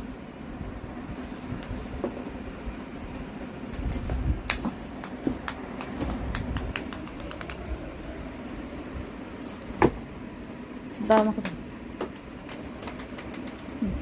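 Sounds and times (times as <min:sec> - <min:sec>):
ball clicks and taps: 0:04.5 - 0:07.8, 0:11.1 - 0:13.8.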